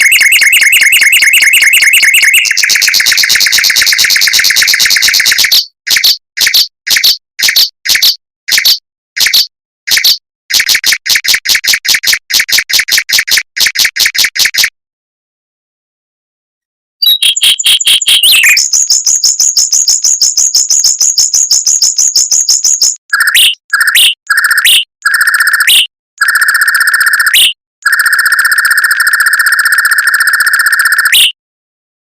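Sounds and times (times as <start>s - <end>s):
mockingbird trilling: 17.0s - 19.0s.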